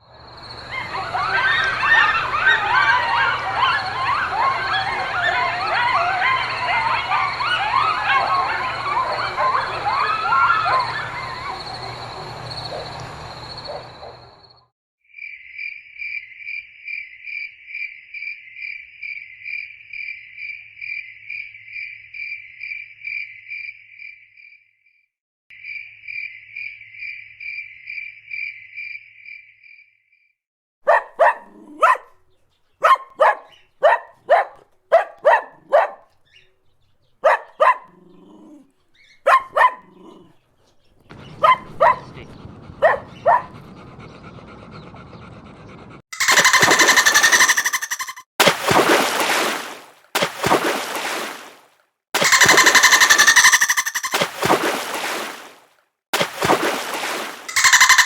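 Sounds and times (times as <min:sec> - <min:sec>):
dog barking: 0:00.7 - 0:14.4, 0:30.8 - 0:36.2, 0:37.2 - 0:40.4, 0:41.1 - 0:43.9, 0:46.2 - 0:48.2
cricket trilling: 0:10.4 - 0:14.6, 0:46.2 - 0:48.2, 0:52.2 - 0:54.1, 0:57.6 - 0:58.0.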